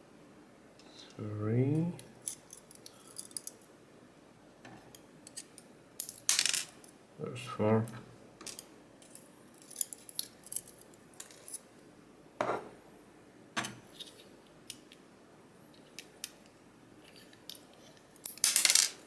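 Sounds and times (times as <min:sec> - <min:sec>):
metal lock pins clinking: 0:08.5 - 0:11.6.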